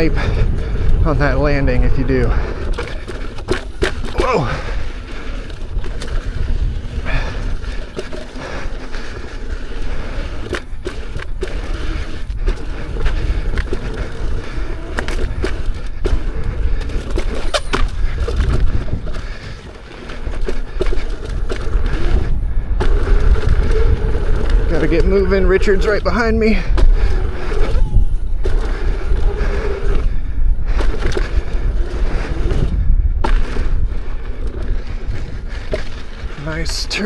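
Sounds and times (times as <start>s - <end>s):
knocks and clatters on rough ground: 0.0s - 37.0s
tyre rolling noise: 0.0s - 37.0s
wind buffeting microphone: 0.0s - 37.0s.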